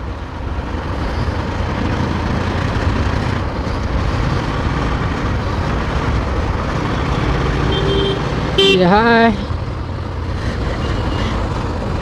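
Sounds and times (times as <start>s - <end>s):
motorcycle engine running: 2.4s - 10.9s.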